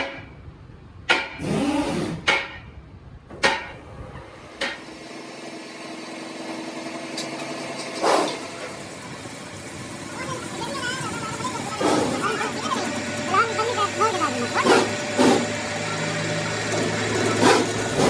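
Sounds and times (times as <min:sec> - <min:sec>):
hammer striking metal: 0:01.1 - 0:01.4, 0:02.2 - 0:02.7, 0:03.4 - 0:03.8, 0:04.6 - 0:04.9
machine humming: 0:03.4 - 0:18.0.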